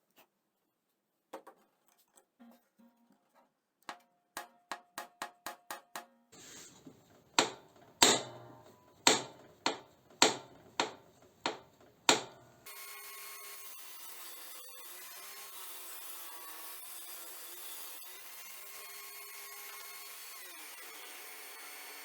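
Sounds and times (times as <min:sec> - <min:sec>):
rasping of sawing or filing: 0:06.4 - 0:06.9
hammering on workpiece: 0:07.4 - 0:12.7.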